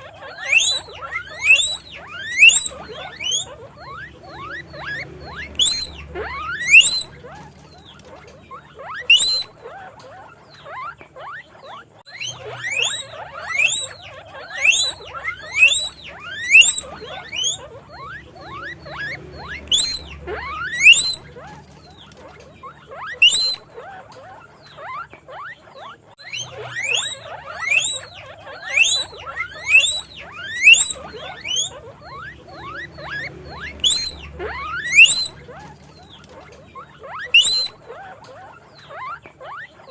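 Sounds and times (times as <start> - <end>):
faint squeaks: 0.0 - 39.9
guinea pigs wheeking: 0.0 - 39.9.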